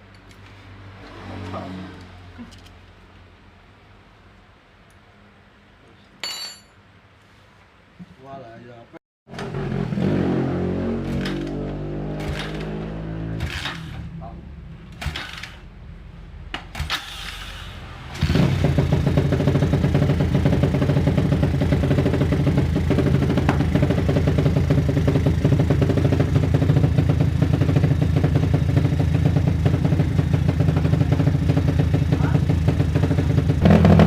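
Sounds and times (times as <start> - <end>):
motorcycle engine running: 18.2 - 34.0.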